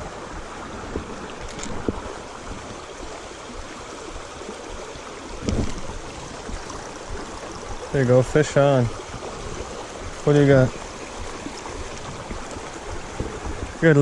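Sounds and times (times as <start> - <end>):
creek water running: 0.0 - 14.0.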